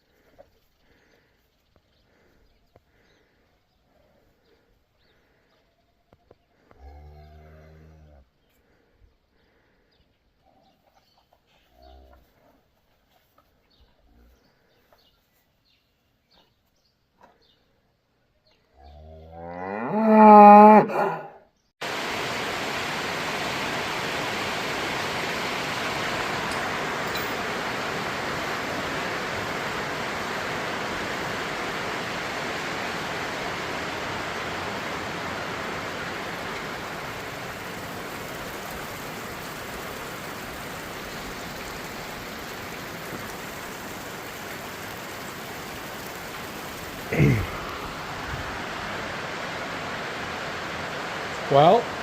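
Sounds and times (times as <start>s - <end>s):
cow mooing: 18.8s - 21.4s.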